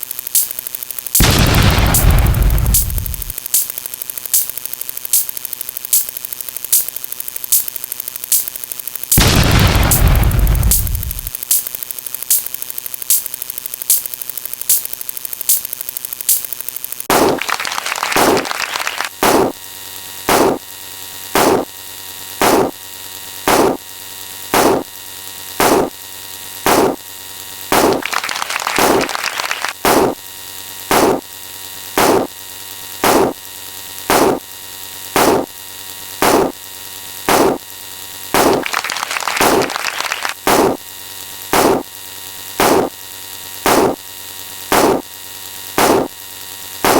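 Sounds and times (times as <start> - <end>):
electronic pulsing beat: 0.0 - 17.4, 21.4 - 21.7, 22.4 - 22.8
electronic buzzing hum: 0.0 - 46.9.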